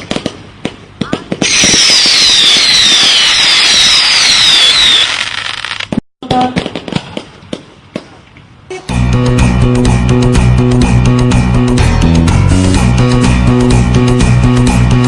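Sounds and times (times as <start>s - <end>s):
firework cracks and pops: 0.0s - 8.4s
fireworks hissing and whistling: 1.4s - 6.0s.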